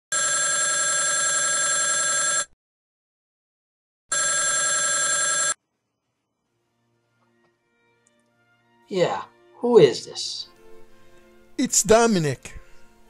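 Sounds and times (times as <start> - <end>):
telephone ringing: 0.1 - 2.5, 4.1 - 5.6.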